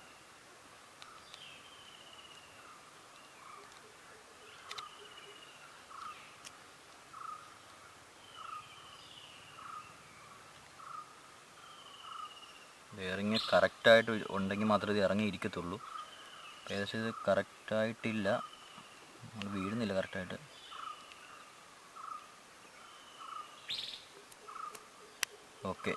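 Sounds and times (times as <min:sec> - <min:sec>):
faint sharp clicks: 0:01.0 - 0:01.5, 0:02.2 - 0:02.5, 0:03.6 - 0:03.9, 0:04.6 - 0:05.0, 0:05.9 - 0:07.0, 0:18.7 - 0:19.7, 0:21.0 - 0:21.3, 0:24.2 - 0:25.9.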